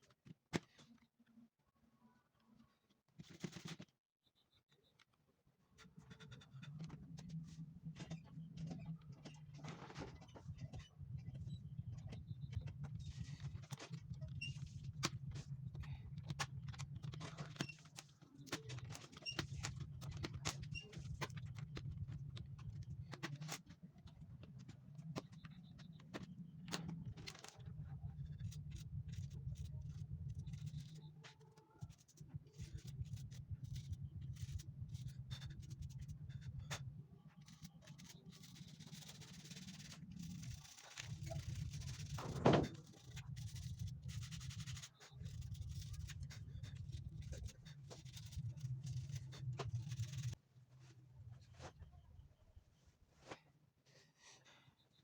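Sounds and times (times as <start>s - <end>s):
rubbing on keyboard: 24.4s - 50.4s.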